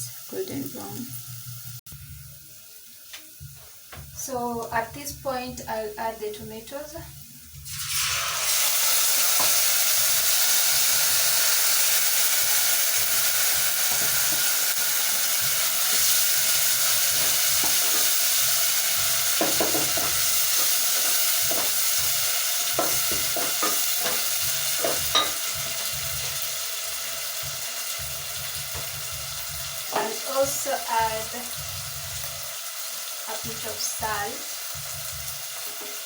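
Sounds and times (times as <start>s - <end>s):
food sizzling in hot oil: 0.0s - 36.0s
spoon knocking against pot: 22.8s - 26.4s.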